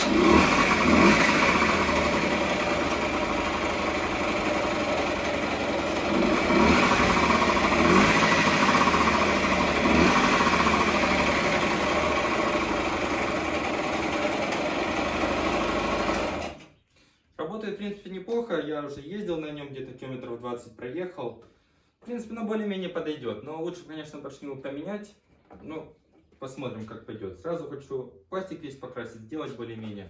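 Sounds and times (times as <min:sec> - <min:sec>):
scooter engine running with throttle blips: 0:00.0 - 0:16.6.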